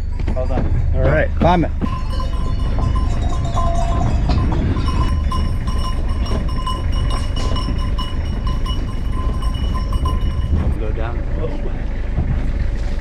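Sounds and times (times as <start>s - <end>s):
sheep bells clanking: 0.4s - 10.8s
steady low rumble: 1.4s - 13.0s.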